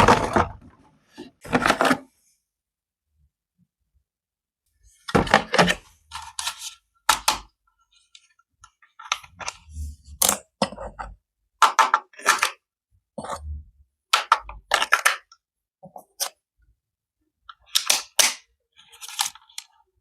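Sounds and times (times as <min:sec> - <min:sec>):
plastic packaging crackles and clicks: 0:17.7 - 0:19.8.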